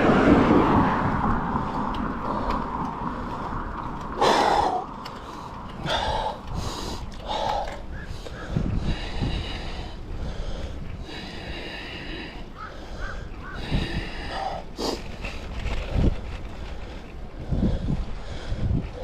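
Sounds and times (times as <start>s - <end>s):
wind rumbling on microphone: 0.0s - 19.0s
bird harsh drawn-out calls: 12.5s - 13.8s.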